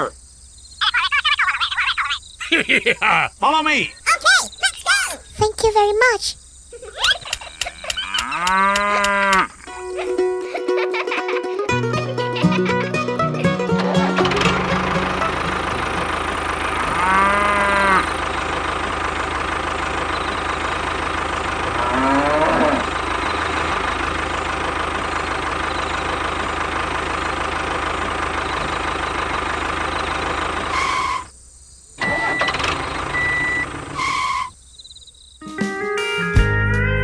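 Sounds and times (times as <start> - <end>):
engine running: 7.3 - 31.3, 32.0 - 34.6
cow mooing: 7.5 - 9.6, 16.8 - 18.2, 21.6 - 23.1.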